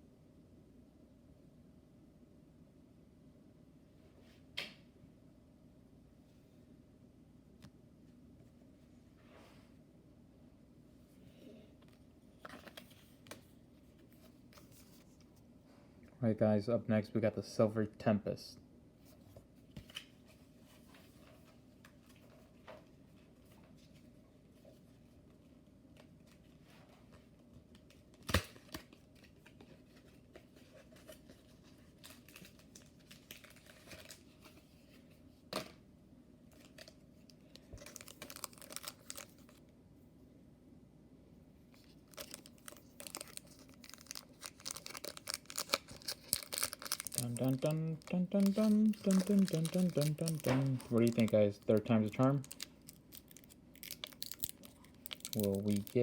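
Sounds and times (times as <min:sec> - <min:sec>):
faint low hum: 0:00.0 - 0:56.0
foil wrapper crinkling: 0:28.2 - 0:34.7, 0:36.6 - 0:39.6, 0:41.8 - 0:56.0.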